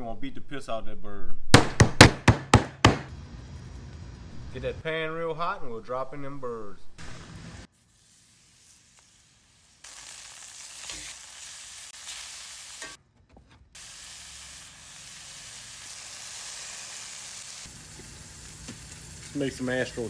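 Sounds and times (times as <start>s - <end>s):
meat sizzling in hot oil: 7.0s - 13.0s, 13.8s - 20.0s.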